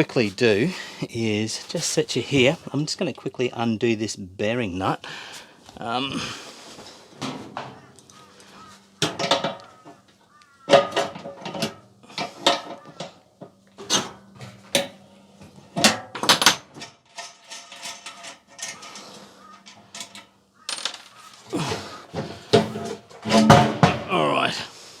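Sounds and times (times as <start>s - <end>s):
spanner clinking on sheet metal: 15.8s - 21.4s.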